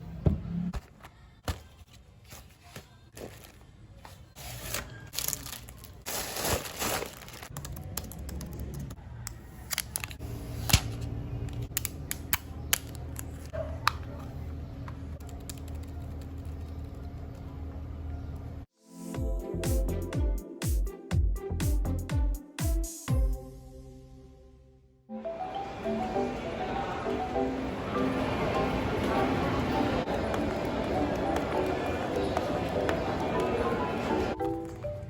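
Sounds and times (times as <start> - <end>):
packaging tearing and crinkling: 4.4 - 7.8.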